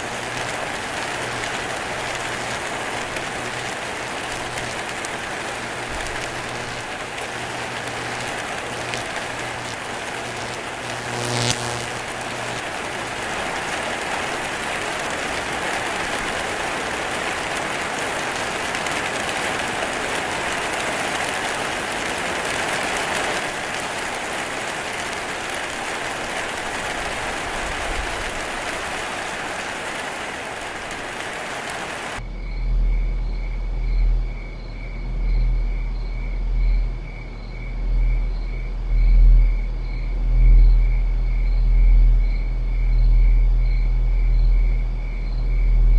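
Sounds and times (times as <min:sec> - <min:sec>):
crickets chirping: 0:00.0 - 0:30.2, 0:30.8 - 0:45.9
heavy rain hiss: 0:00.0 - 0:32.4
deep pulsing drone: 0:32.2 - 0:45.9.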